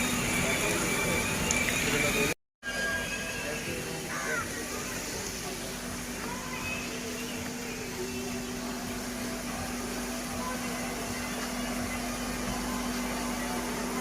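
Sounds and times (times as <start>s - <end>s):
even hiss: 0.0s - 14.0s
mechanical hum: 0.0s - 14.0s.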